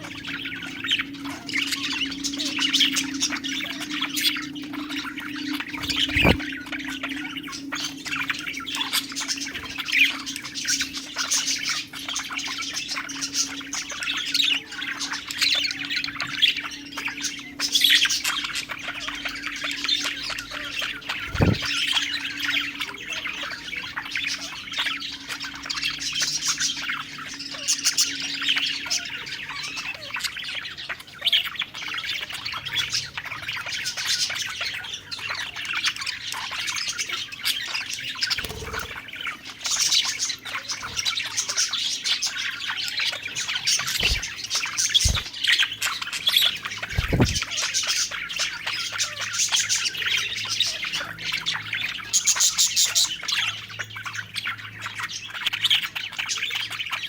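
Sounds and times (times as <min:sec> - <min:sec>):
budgerigars chattering: 0:00.0 - 0:57.0
low thumps: 0:05.8 - 0:06.4, 0:21.3 - 0:21.7.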